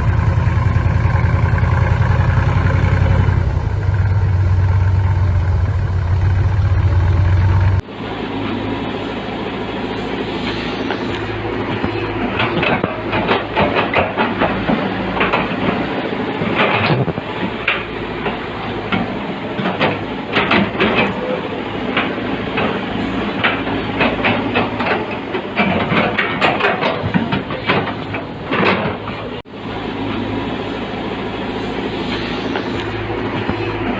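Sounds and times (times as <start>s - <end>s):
diesel engine running: 0.0s - 33.9s
metal and rock clanking: 10.9s - 29.4s.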